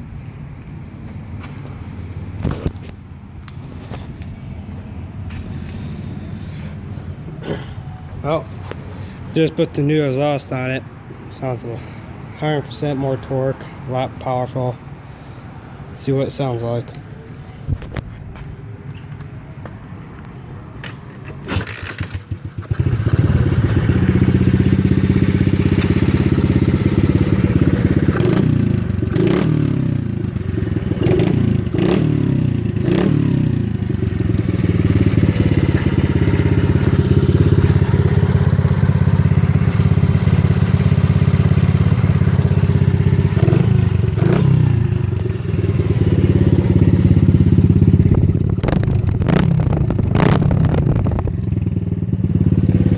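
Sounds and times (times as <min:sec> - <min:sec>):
dirt bike engine revving: 0:21.6 - 0:52.9.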